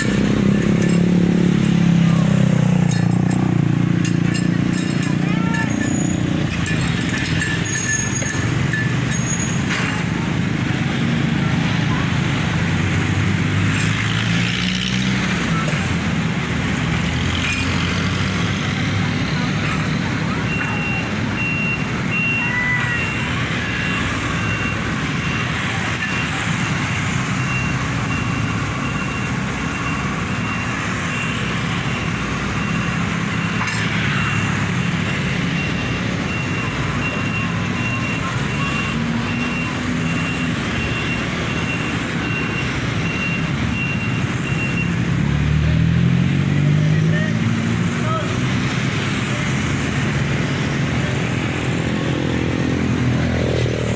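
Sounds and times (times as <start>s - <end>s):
excavator diesel engine running: 0.0s - 47.0s
high-pitched alarm beeping: 20.5s - 45.3s.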